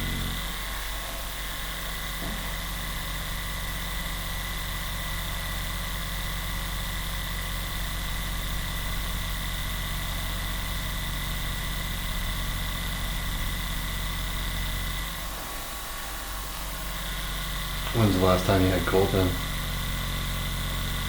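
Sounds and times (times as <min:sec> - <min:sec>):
massage gun buzzing: 0:00.0 - 0:21.0.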